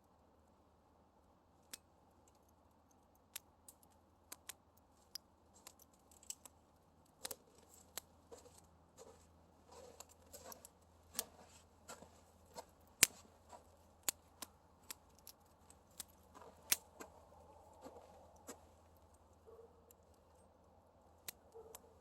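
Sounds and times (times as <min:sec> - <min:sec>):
wood fire crackling: 0:11.3 - 0:19.2.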